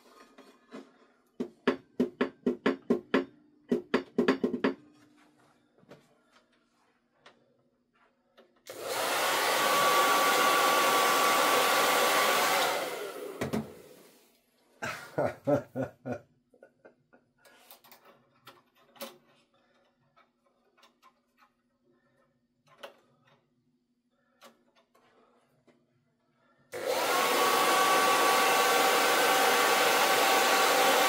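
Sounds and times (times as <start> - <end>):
hair dryer blowing with whine: 8.7 - 14.2, 26.7 - 31.0.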